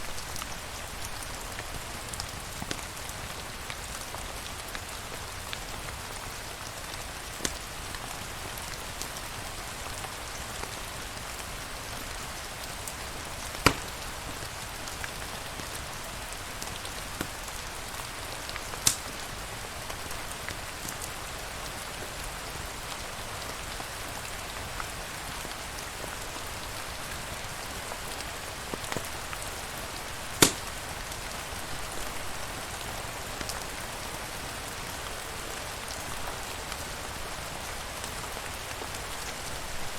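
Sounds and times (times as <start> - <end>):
steady rain: 0.0 - 39.9
sharp pops: 13.6 - 14.0, 18.8 - 19.1, 30.4 - 30.8.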